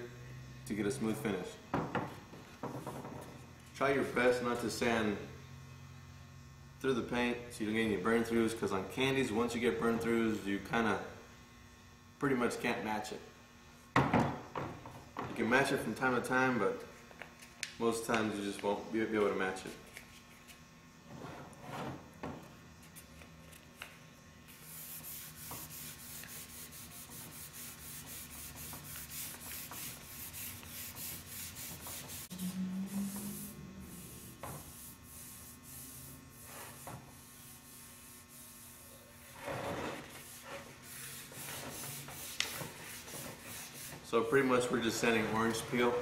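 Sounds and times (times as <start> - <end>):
sandpaper rubbing strokes: 24.5 - 44.1.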